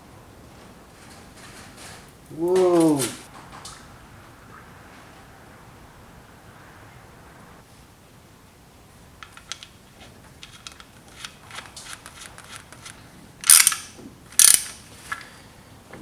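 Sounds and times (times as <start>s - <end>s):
louder short noises: 2.3s - 3.3s
ratchet wrench clicking: 10.4s - 14.8s.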